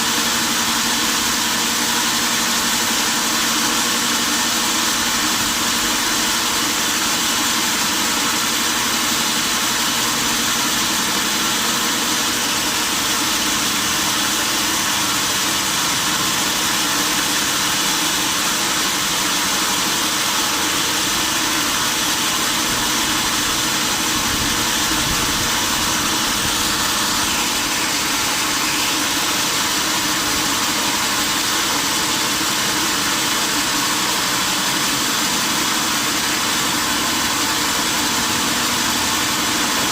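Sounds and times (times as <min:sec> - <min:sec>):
sawmill saw machinery running: 0:00.0 - 0:39.9.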